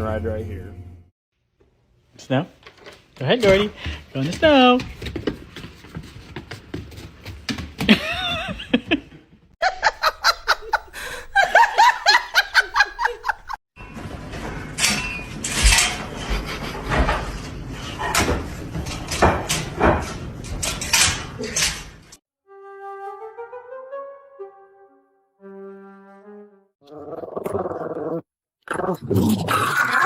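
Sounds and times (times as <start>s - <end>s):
person laughing hard: 7.9s - 13.6s.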